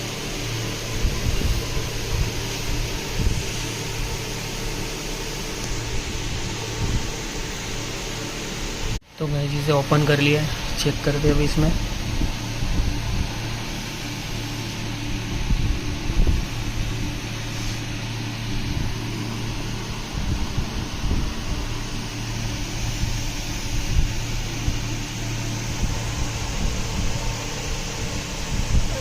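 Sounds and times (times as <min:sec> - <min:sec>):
fan-like whirr with low hum: 0:00.0 - 0:29.0.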